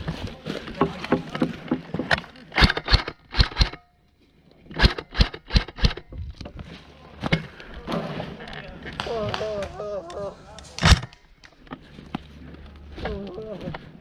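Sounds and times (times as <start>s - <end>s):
airsoft rifle shots: 2.6s - 3.9s, 4.7s - 6.1s.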